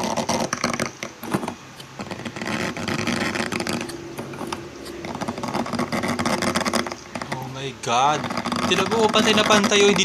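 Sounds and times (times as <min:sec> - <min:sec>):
drawing tool scratching surface: 0:00.0 - 0:10.0
low steady hum: 0:00.0 - 0:10.0.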